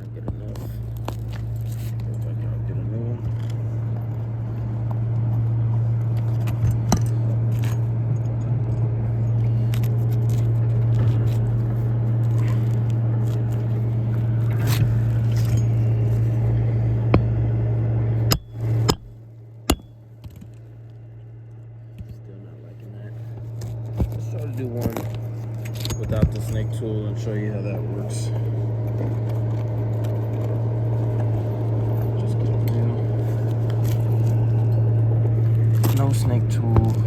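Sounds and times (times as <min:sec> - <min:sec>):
low motor hum: 0:00.0 - 0:37.0
hand tools clicking and scraping: 0:18.2 - 0:20.5, 0:23.5 - 0:26.8.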